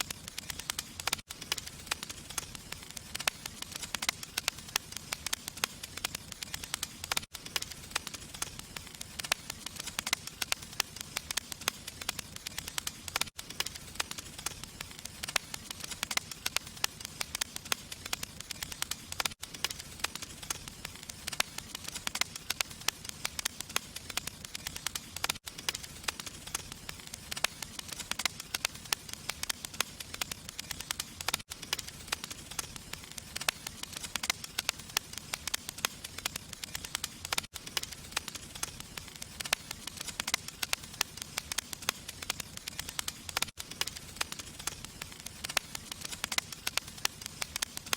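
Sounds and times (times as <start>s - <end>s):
fire crackling and popping: 0.0s - 47.9s.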